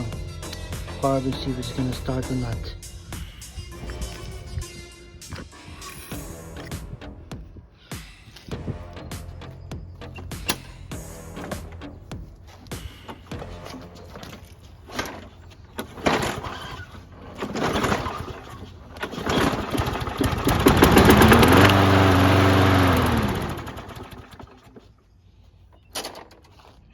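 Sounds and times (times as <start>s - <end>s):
lawn mower engine running: 0.0s - 7.5s, 8.6s - 25.0s
recoil starter pulls: 10.0s - 25.0s.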